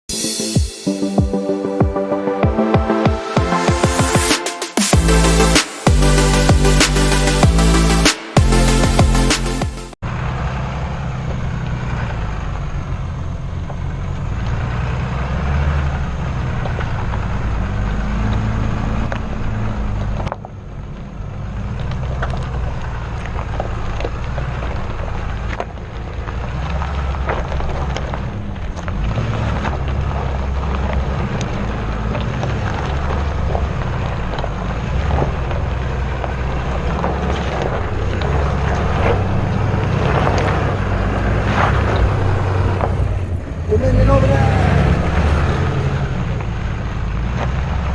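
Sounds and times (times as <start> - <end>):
off-road vehicle engine under load: 5.0 - 47.9.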